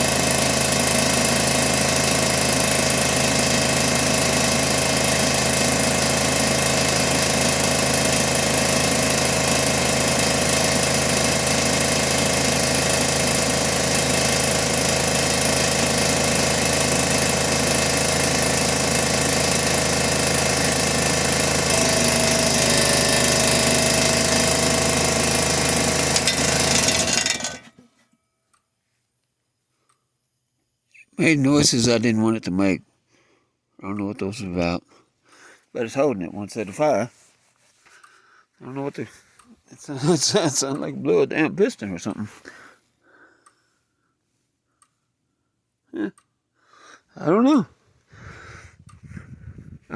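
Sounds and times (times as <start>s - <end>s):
air compressor clattering: 0.0s - 28.0s
person speaking: 31.0s - 32.8s, 33.8s - 34.9s, 35.7s - 37.2s, 38.6s - 42.6s, 47.1s - 47.7s.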